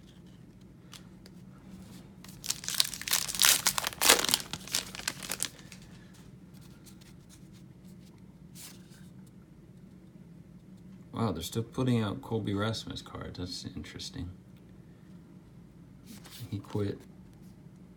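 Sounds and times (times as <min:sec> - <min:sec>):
wrapper crinkling and tearing: 0:02.3 - 0:06.0.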